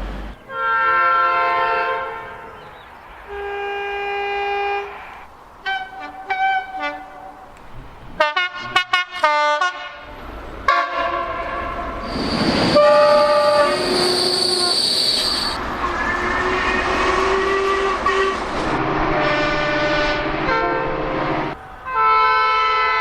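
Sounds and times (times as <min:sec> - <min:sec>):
train horn blasts: 0:00.5 - 0:02.6, 0:03.3 - 0:05.0, 0:05.6 - 0:07.6, 0:08.2 - 0:23.0
rush of noise: 0:02.9 - 0:05.6, 0:11.8 - 0:19.2.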